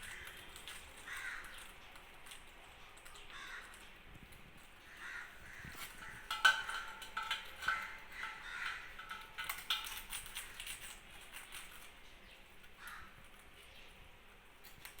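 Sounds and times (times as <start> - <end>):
parrots squawking: 7.6 - 9.2.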